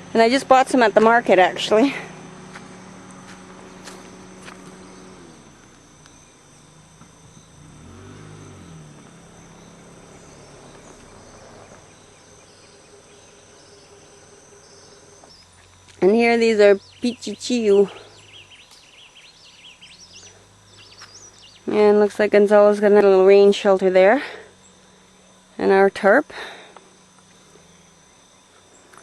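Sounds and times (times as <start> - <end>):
faint low hum: 0.0 - 29.0
insect chorus: 0.0 - 29.0.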